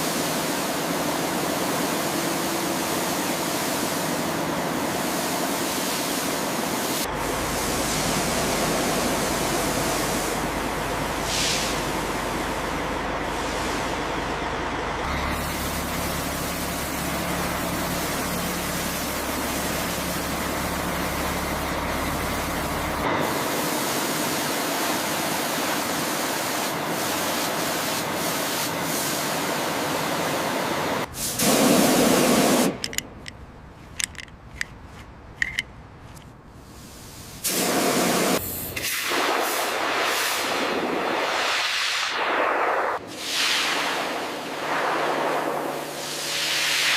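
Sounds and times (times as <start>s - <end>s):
pressure washer spraying: 0.0s - 12.3s, 15.4s - 29.9s, 31.2s - 32.9s, 36.8s - 42.4s
low machine hum: 7.1s - 23.6s.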